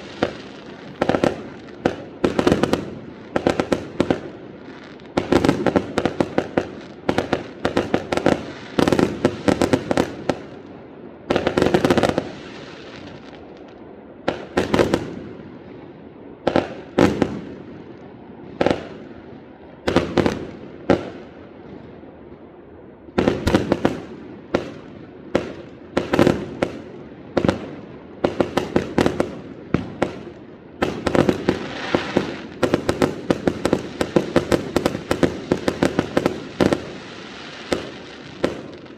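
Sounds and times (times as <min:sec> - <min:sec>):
fireworks rapid crackling: 0:00.0 - 0:10.7, 0:23.2 - 0:38.9
fireworks sharp bangs: 0:00.0 - 0:15.5, 0:16.4 - 0:38.9.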